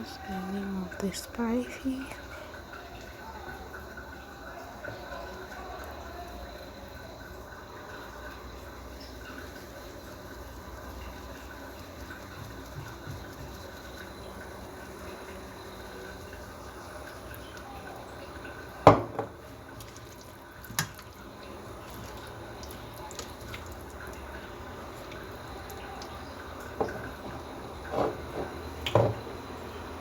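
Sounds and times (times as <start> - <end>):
kitchen knocks and clatters: 18.8 - 19.4, 26.8 - 29.4.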